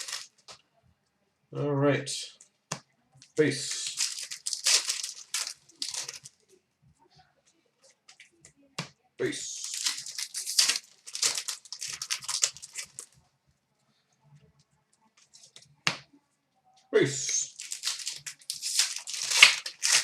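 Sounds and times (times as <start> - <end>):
wrapper tearing and crinkling: 0.0 - 0.3, 3.7 - 6.3, 9.5 - 13.1, 17.3 - 20.0.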